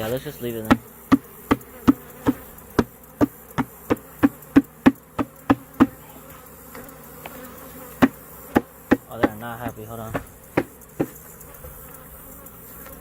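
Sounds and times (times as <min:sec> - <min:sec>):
bees buzzing: 0:00.0 - 0:13.0
sharp knocks: 0:00.6 - 0:06.1, 0:08.0 - 0:11.3.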